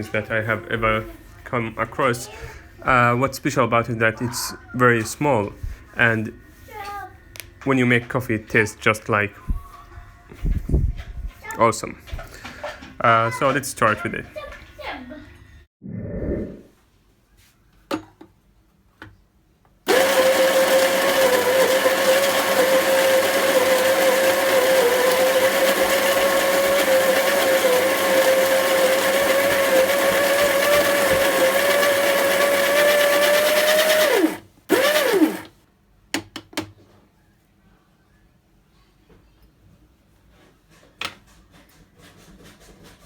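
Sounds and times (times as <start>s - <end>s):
small electric motor whining: 19.9s - 35.5s.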